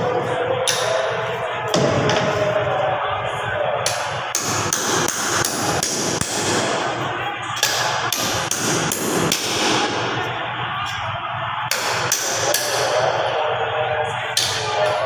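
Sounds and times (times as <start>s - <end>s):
steady background noise: 0.0s - 15.0s
hammer strikes: 0.6s - 1.1s, 1.7s - 2.6s, 3.8s - 6.9s, 7.6s - 10.3s, 11.7s - 13.0s.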